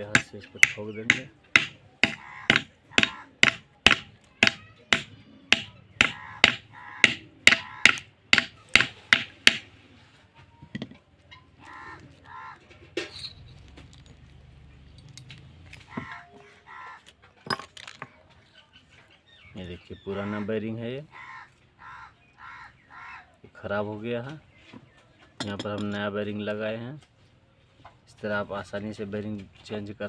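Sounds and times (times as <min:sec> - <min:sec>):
crow cawing: 0:02.0 - 0:03.6, 0:06.0 - 0:08.1, 0:11.6 - 0:12.7, 0:15.9 - 0:17.1, 0:21.1 - 0:23.3.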